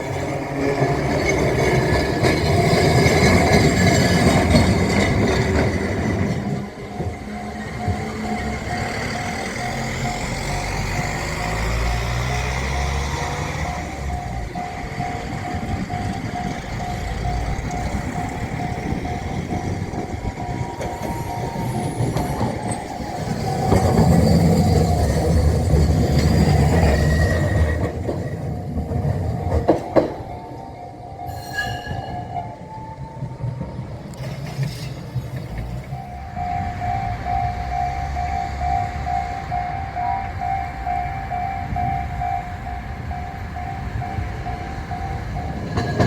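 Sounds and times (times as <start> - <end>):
train wheel clacks: 0.0 - 30.5, 41.0 - 46.0
diesel train rumbling: 0.0 - 46.0
level-crossing warning bells: 0.0 - 46.0.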